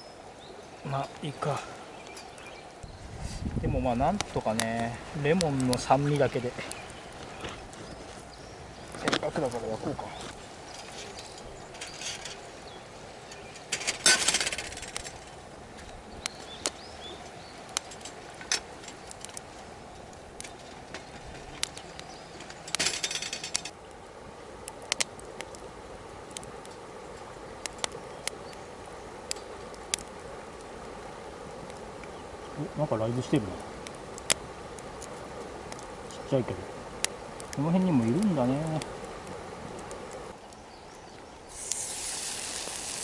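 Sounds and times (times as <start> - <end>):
campfire crackling: 0.0 - 43.0
sharp pops: 41.5 - 43.0
short noisy bursts: 41.5 - 43.0.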